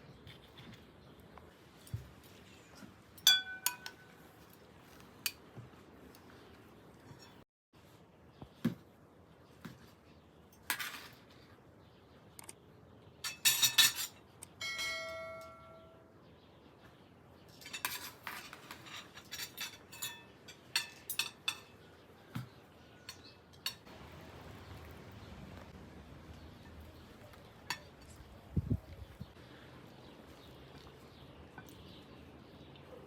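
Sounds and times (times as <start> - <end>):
metal dishes clinking: 3.2 - 4.2, 13.2 - 15.9, 17.5 - 21.9, 23.0 - 23.9, 27.6 - 28.2
struck metal vessel ringing: 3.2 - 4.2, 14.6 - 16.0.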